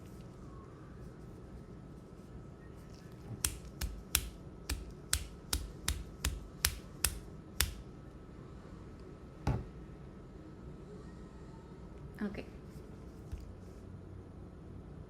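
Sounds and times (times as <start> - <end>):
finger flicking plastic syringe: 3.4 - 7.8.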